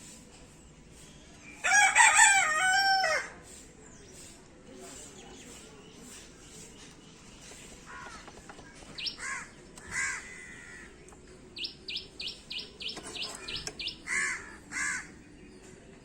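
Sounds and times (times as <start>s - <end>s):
birds calling: 5.0s - 16.0s
high bird chirps: 8.0s - 10.0s, 11.6s - 14.4s.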